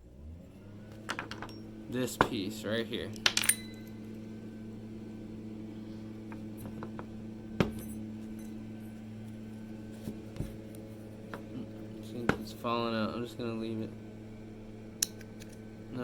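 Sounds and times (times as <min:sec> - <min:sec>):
steady low hum: 0:00.0 - 0:16.0
small metal parts clicking: 0:01.0 - 0:01.6, 0:03.1 - 0:04.0.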